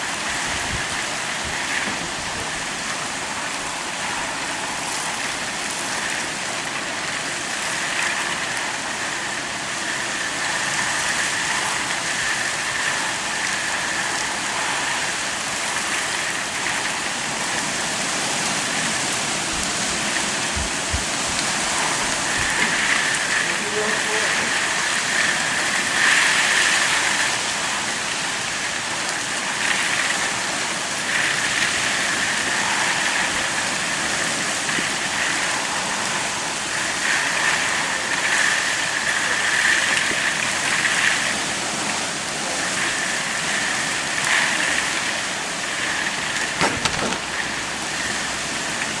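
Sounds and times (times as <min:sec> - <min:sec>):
heavy rain pouring: 0:00.0 - 0:49.0
sharp knocks: 0:46.6 - 0:47.4.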